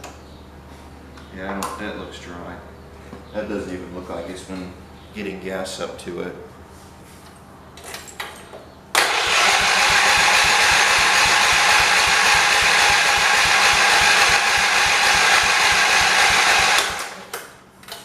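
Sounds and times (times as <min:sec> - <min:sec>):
engine cranking on starter: 0:09.0 - 0:17.4.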